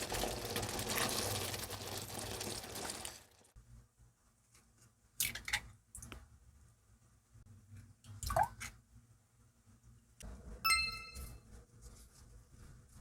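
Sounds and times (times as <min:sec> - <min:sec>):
sharp ringing clink: 0:10.7 - 0:11.4.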